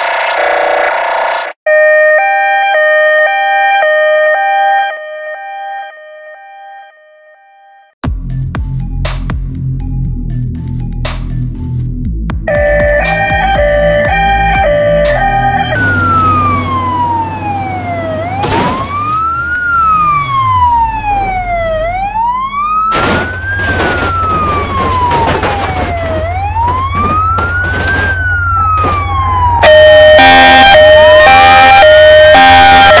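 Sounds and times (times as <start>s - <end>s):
ambulance siren wailing: 0.0s - 7.8s, 12.5s - 33.0s
two-tone hi-lo siren: 0.0s - 8.0s, 12.5s - 23.0s, 28.0s - 33.0s.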